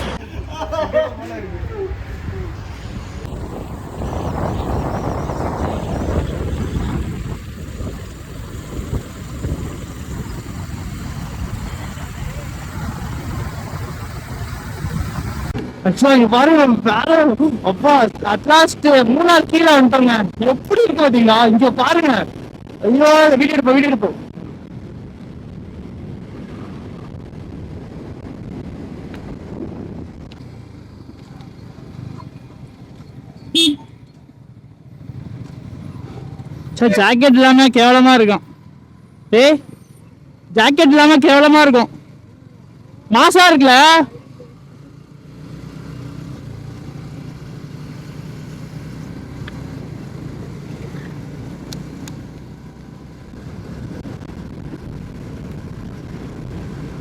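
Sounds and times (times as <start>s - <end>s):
low rumble of motor vehicles: 0.0s - 57.0s
vehicle horn toot: 33.5s - 34.0s.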